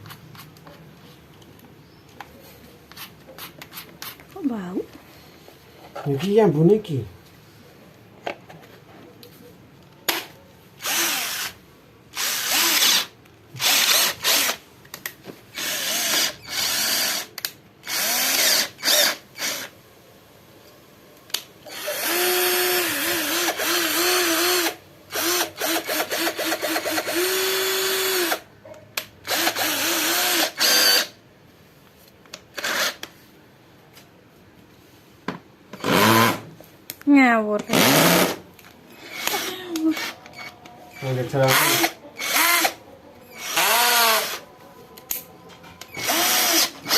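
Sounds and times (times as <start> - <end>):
cordless drill motor spinning: 10.8 - 11.6, 12.2 - 14.6, 15.5 - 19.7, 21.7 - 28.4, 29.3 - 31.1, 39.0 - 44.4, 45.9 - 46.9.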